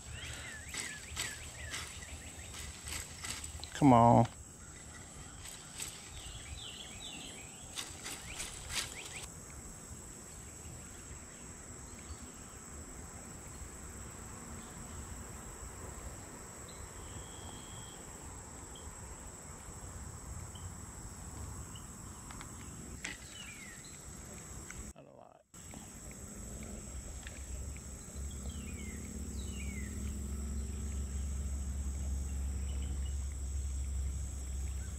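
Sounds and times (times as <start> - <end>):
bird chirps: 0.0 - 2.8, 27.3 - 34.0
crickets trilling: 0.0 - 24.9, 25.6 - 34.9
outdoor background noise: 0.0 - 34.9.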